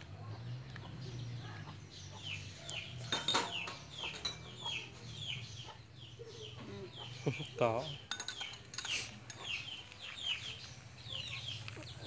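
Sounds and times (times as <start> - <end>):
chickens calling: 0.0 - 12.0
metal utensils clattering: 3.0 - 4.7, 7.9 - 9.6.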